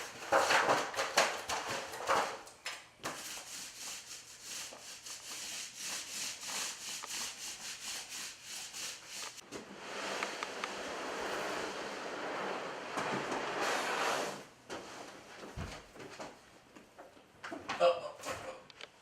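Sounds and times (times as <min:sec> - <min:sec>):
rubbing strokes: 0:03.1 - 0:10.2.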